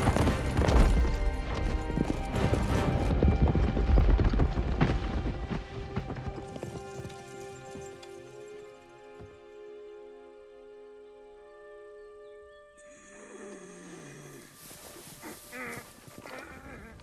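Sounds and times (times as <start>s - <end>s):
horses galloping: 0.0s - 9.4s
film score music: 0.0s - 17.0s.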